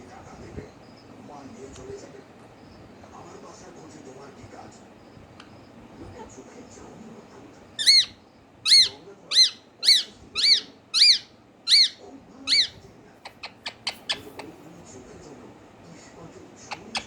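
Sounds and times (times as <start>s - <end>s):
parrot squawks: 7.8s - 14.4s.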